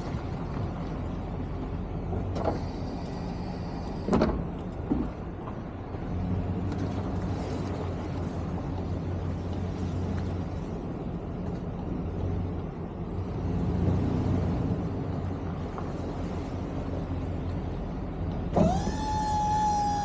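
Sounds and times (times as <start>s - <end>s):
truck engine droning: 12.3s - 20.0s.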